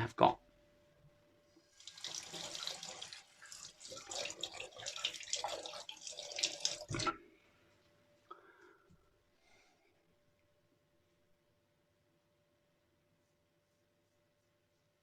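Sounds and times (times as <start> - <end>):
tap water splashing into sink: 1.8 - 7.2.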